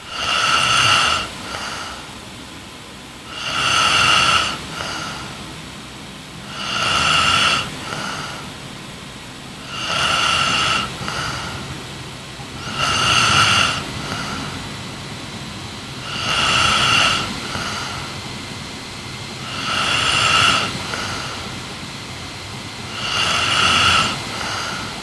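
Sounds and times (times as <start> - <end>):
woman snoring: 0.0 - 2.1, 3.3 - 5.4, 6.5 - 8.8, 9.6 - 11.8, 12.6 - 14.6, 16.0 - 18.2, 19.4 - 21.6, 22.9 - 25.0.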